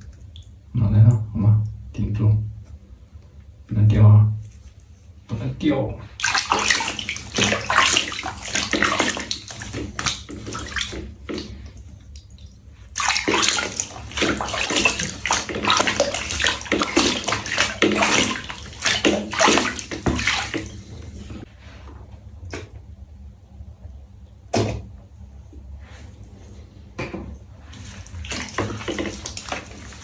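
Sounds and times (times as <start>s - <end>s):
water sloshing in a bath: 0.0s - 30.0s.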